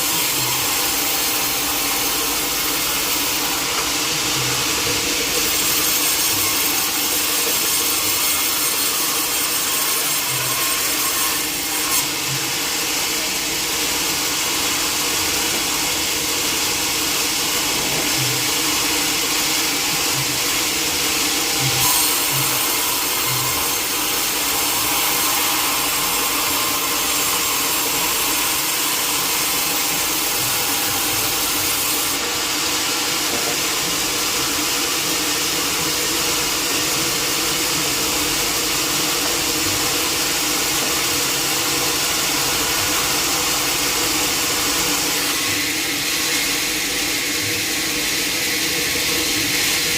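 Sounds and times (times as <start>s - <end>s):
sawmill machinery drone: 0.0s - 49.9s.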